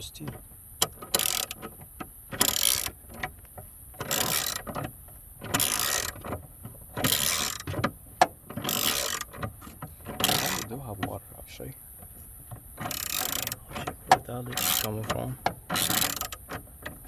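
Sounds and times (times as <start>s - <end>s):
ratchet wrench clicking: 0.8s - 1.6s, 2.4s - 3.0s, 4.0s - 4.7s, 5.5s - 6.2s, 7.0s - 7.7s, 8.6s - 9.3s, 10.2s - 10.7s, 12.8s - 13.6s, 14.5s - 16.5s.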